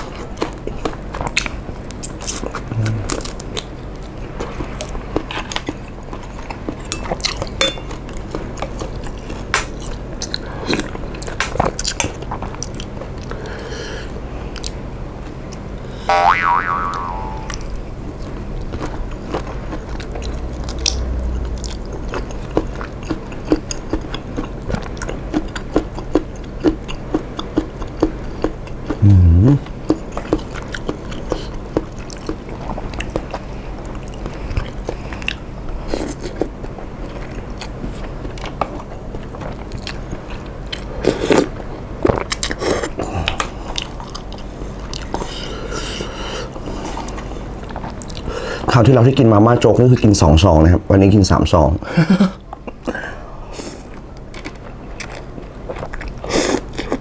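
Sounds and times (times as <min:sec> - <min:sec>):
chewing noodles: 0:00.0 - 0:13.6, 0:18.2 - 0:48.7, 0:52.5 - 0:57.0
low vocal sound: 0:02.7 - 0:03.3, 0:29.0 - 0:29.8.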